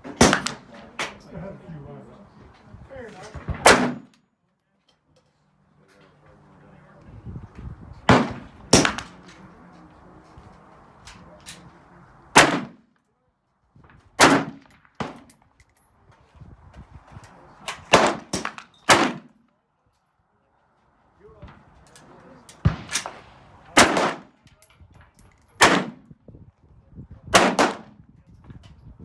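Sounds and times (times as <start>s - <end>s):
rifle firing single shots: 3.6s - 4.1s, 8.1s - 9.1s, 12.4s - 12.7s, 14.2s - 15.4s, 17.9s - 19.3s, 23.8s - 24.3s, 25.6s - 26.0s, 27.3s - 27.9s.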